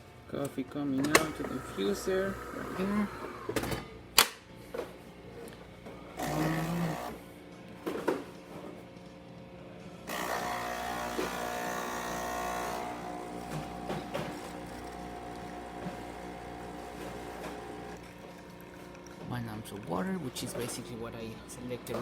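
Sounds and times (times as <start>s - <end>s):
espresso machine pump buzzing: 1.1s - 3.7s, 6.2s - 7.3s, 10.1s - 22.0s.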